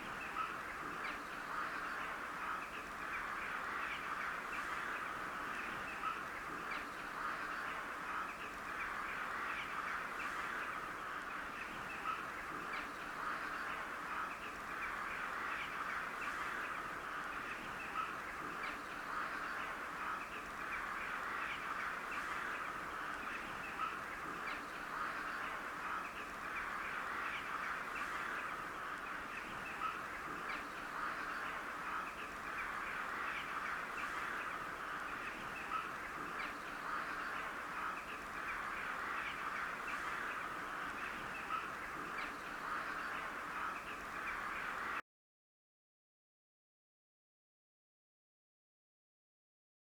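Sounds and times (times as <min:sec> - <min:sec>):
crows cawing: 0:13.2 - 0:45.0.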